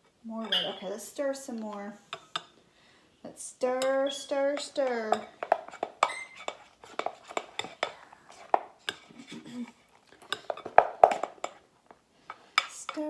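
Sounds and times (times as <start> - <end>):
spoon scraping a bowl: 0.4 - 0.9, 3.6 - 11.6.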